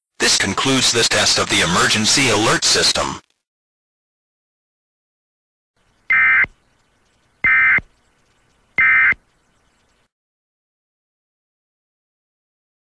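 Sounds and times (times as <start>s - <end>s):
warbling digital data tones: 6.1s - 6.5s.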